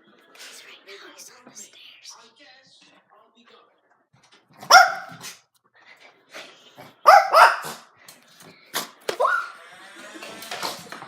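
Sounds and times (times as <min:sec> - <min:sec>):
dog barking: 0:04.6 - 0:05.4, 0:07.0 - 0:07.9, 0:09.1 - 0:09.6.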